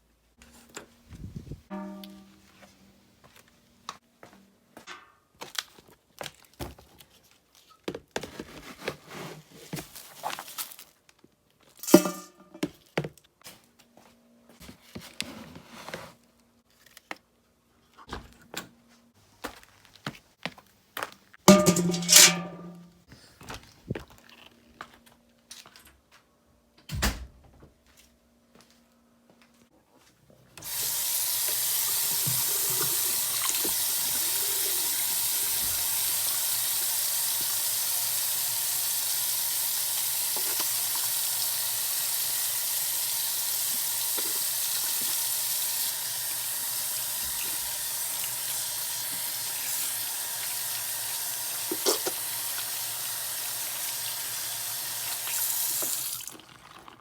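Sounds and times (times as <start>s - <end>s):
tap water running into sink: 11.9s - 12.3s, 30.6s - 57.0s.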